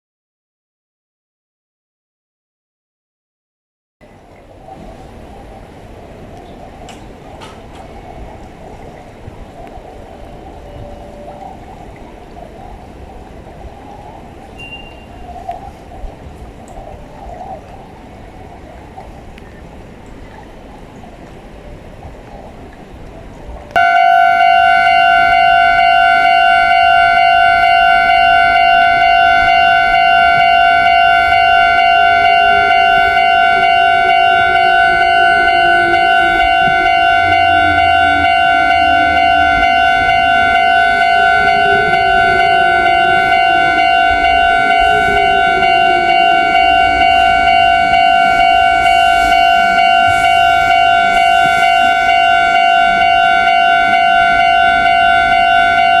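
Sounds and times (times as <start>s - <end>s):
level crossing warning bell: 14.5s - 15.4s, 23.8s - 56.0s
low whine gliding down: 21.6s - 56.0s.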